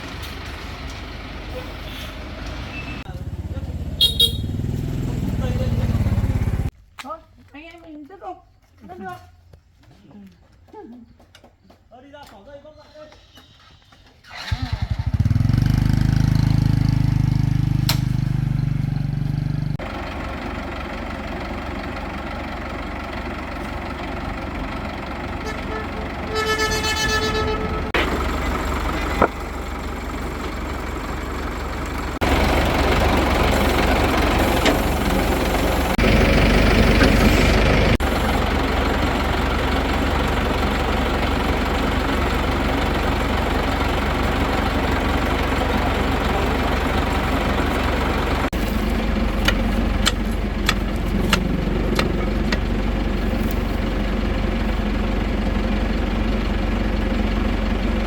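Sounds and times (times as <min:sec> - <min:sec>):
heavy engine running: 0:00.0 - 0:06.7, 0:14.3 - 0:58.0
horn-like tone: 0:04.0 - 0:04.6, 0:25.4 - 0:28.0.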